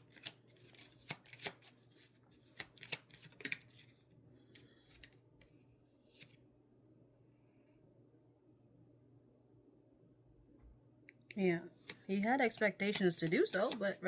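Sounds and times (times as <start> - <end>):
cards shuffling and snapping: 0.0 - 4.0, 11.8 - 14.0.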